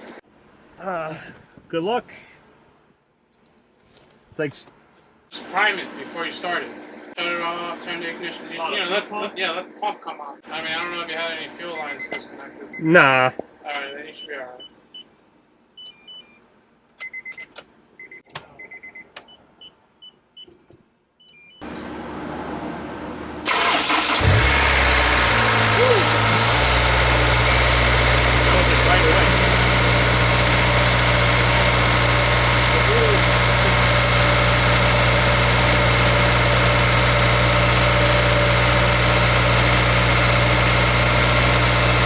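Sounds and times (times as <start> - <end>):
starter motor cranking engine: 23.4 - 42.0.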